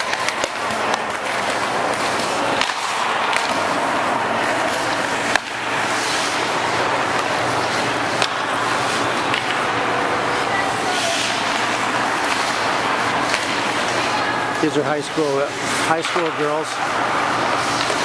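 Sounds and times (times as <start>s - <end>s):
hockey puck clack: 0.0s - 18.0s
ice skates scraping on ice: 0.0s - 18.0s.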